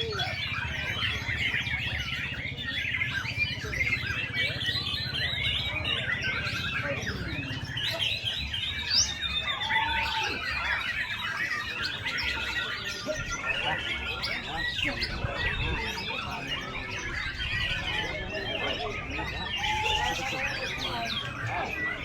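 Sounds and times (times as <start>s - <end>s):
bird singing chattering chirps: 0.0s - 22.0s.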